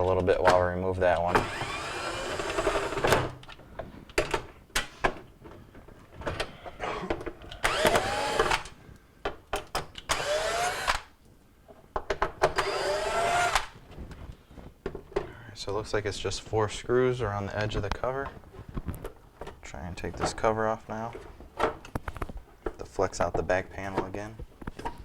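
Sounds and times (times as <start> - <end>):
power drill motor whine: 1.3 - 3.3, 7.6 - 8.7, 10.1 - 11.1, 12.5 - 13.8.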